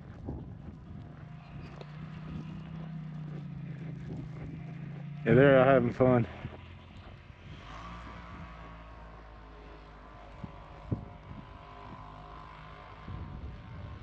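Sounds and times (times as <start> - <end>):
wind noise on microphone: 0.0 - 2.6, 10.4 - 12.1, 13.0 - 14.0
distant small engine drone: 0.0 - 14.0.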